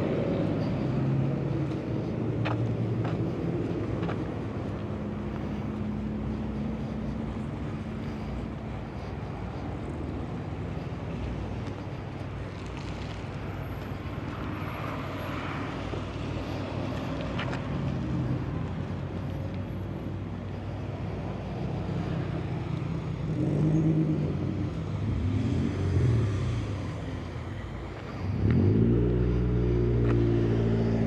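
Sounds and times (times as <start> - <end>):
car engines humming: 0.0 - 31.0
car pulling away: 12.3 - 31.0.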